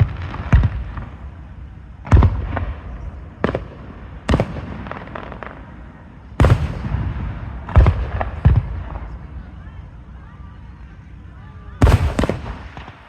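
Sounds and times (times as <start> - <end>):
fireworks booming: 0.0 - 9.5, 11.8 - 13.0
light fireworks pops: 11.8 - 13.0.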